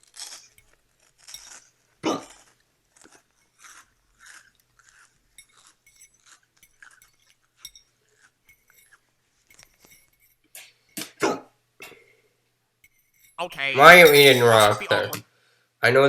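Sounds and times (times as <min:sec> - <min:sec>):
cartoon rock crunching: 0:00.0 - 0:07.0.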